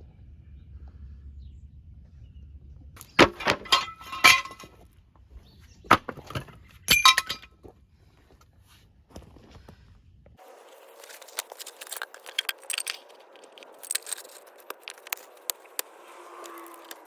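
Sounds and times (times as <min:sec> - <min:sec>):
metal tools clanking: 0:03.0 - 0:04.8, 0:05.9 - 0:07.5, 0:11.0 - 0:15.8.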